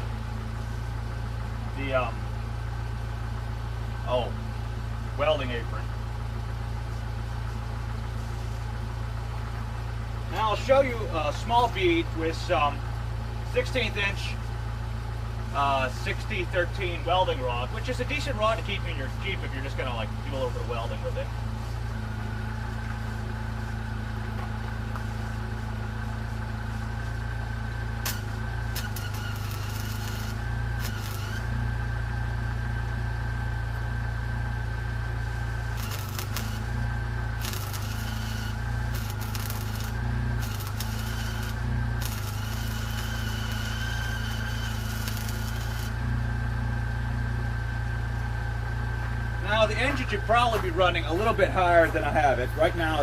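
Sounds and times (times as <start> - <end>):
engine idling: 0.0 - 53.0
welding arc crackling and hissing: 28.0 - 31.6, 35.7 - 36.8, 37.4 - 46.0.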